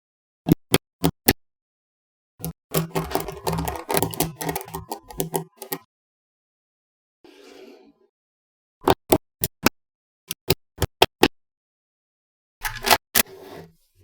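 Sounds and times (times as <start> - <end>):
magnetic balls clicking together: 2.4 - 5.8.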